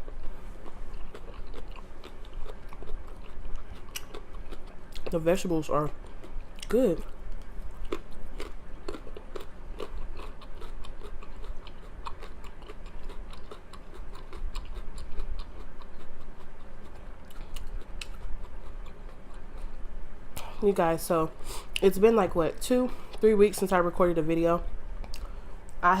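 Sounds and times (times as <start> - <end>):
person chewing food: 0.0 - 5.2, 5.9 - 20.5, 25.0 - 25.8
low steady hum: 0.0 - 26.0.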